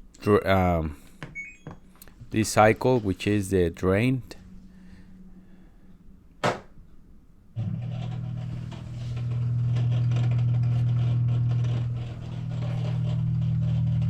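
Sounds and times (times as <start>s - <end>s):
washing machine drain pump humming: 7.6s - 14.0s.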